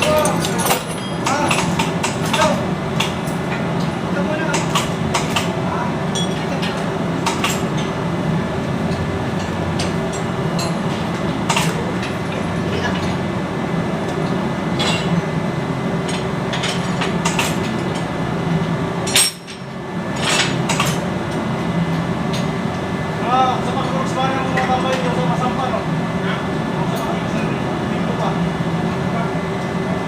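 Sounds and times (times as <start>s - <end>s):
metal tools clinking: 0.0s - 1.7s
low machinery hum: 0.0s - 30.0s.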